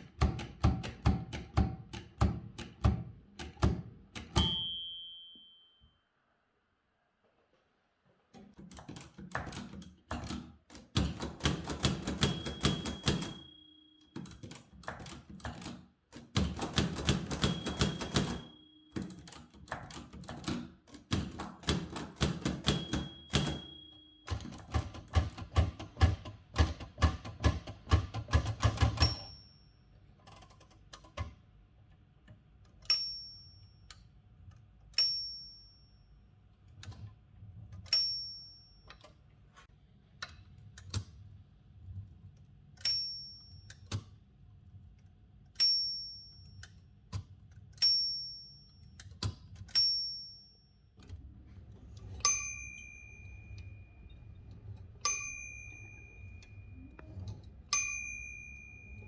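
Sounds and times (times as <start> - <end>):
typewriter key strikes: 0.0 - 5.0, 8.6 - 29.4
typewriter margin bell: 4.3 - 5.8, 11.0 - 15.4, 16.4 - 20.6, 21.7 - 25.8, 28.0 - 29.8, 52.1 - 59.0.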